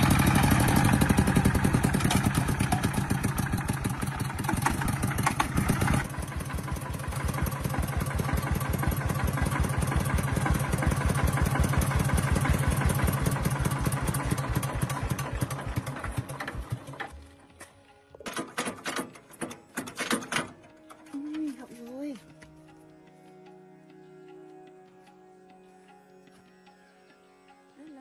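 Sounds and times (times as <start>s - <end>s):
diesel tractor engine running: 0.0s - 21.4s.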